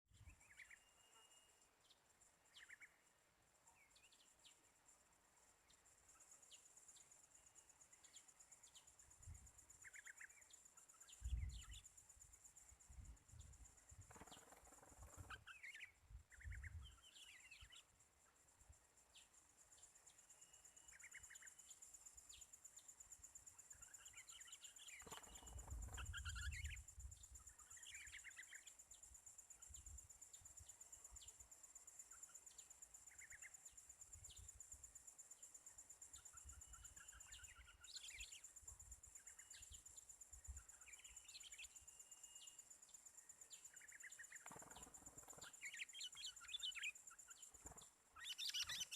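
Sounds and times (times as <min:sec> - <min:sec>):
songbirds chirping: 0:00.1 - 0:48.9
high-pitched pulsing insect drone: 0:06.1 - 0:48.9.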